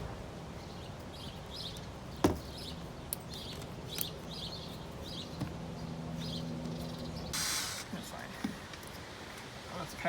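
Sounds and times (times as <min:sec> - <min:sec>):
small birds chirping: 0:00.6 - 0:07.4.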